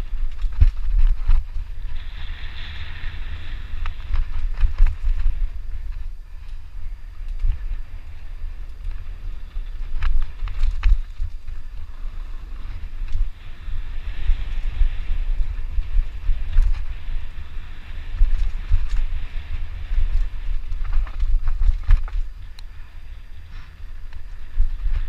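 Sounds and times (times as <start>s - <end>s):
tyre and trail hiss: 0.0s - 25.0s
wind buffeting microphone: 0.0s - 25.0s
bike clattering over bumps: 3.6s - 22.8s.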